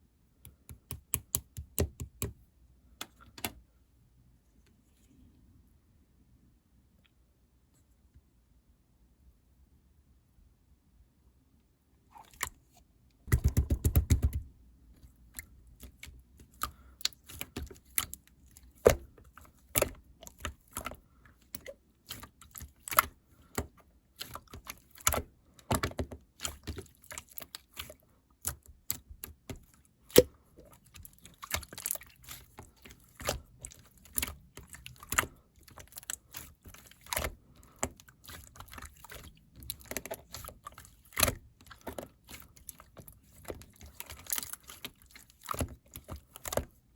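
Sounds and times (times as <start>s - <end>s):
slime squished by hand: 15.2s - 46.8s.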